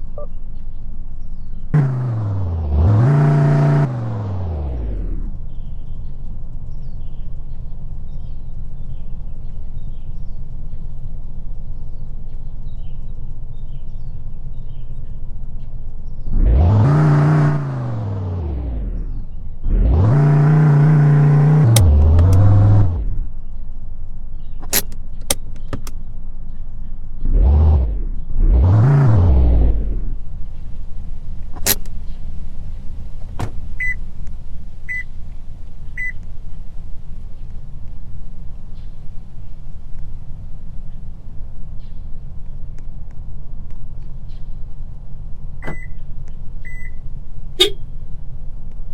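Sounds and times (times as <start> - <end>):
engine idling and revving: 0.0 - 48.9
sharp click: 21.6 - 22.8, 24.6 - 26.0, 31.6 - 32.0
short high beeps: 47.6 - 47.8.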